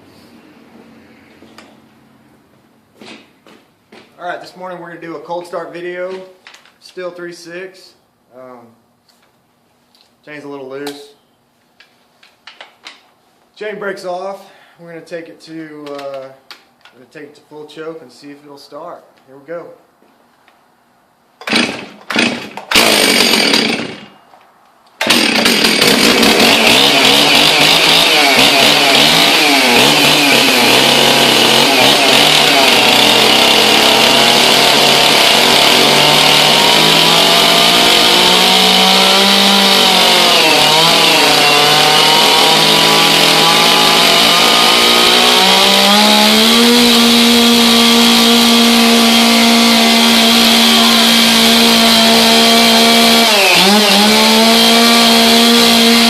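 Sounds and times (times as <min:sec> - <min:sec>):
chainsaw starting and running: 0:21.4 - 0:24.2, 0:24.9 - 0:56.0.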